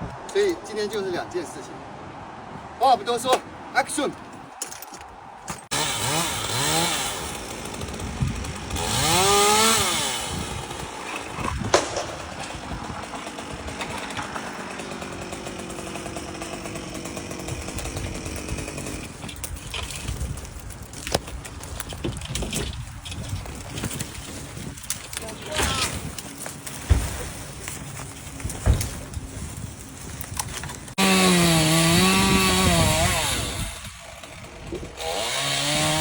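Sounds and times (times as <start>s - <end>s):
chainsaw revving and running: 5.7s - 20.3s, 30.4s - 36.0s.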